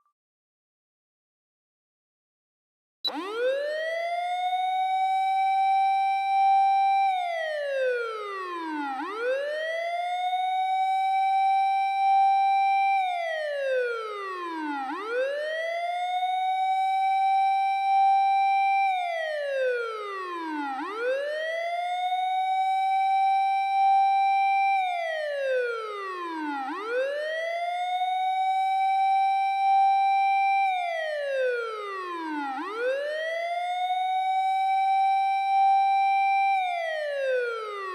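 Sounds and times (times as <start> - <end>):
fire engine siren wailing: 3.1 - 37.9.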